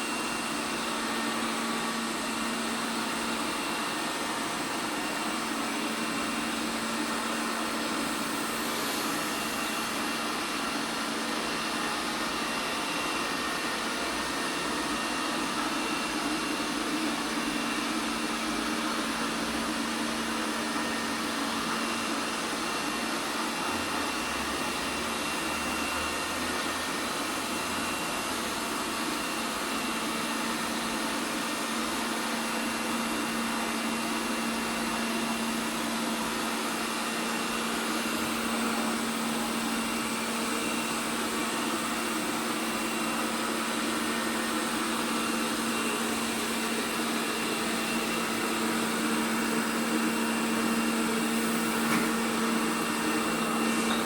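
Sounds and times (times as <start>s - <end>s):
robot vacuum cleaner whirring: 28.3s - 54.0s.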